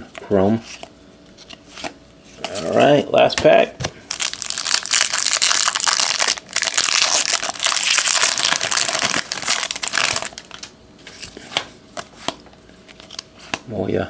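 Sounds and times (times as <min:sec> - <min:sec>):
card pack wrapper crinkling: 0:04.1 - 0:10.7.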